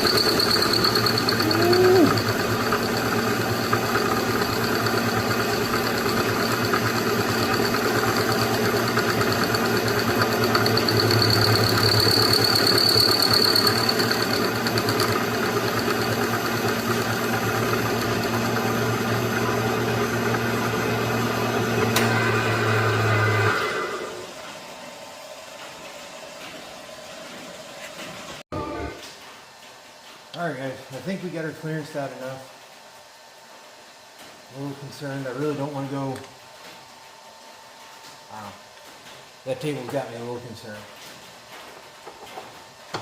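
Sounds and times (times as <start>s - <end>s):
milling machine running: 0.0s - 24.5s.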